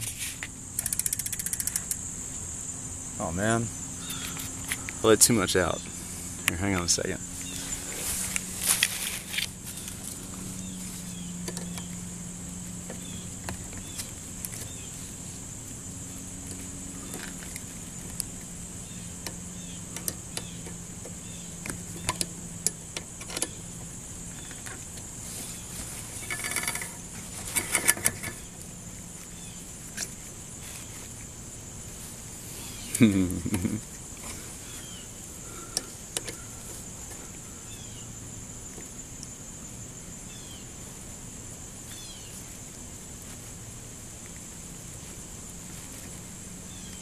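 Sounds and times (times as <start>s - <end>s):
steady high-pitched hum: 0.0s - 47.0s
metallic clicks of hand tools: 0.8s - 2.0s.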